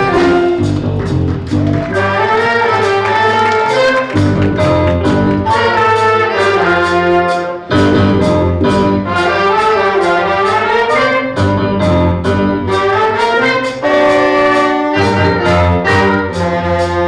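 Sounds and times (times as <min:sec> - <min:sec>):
brass sustained chords: 0:00.0 - 0:17.0
concert band playing: 0:00.0 - 0:17.0.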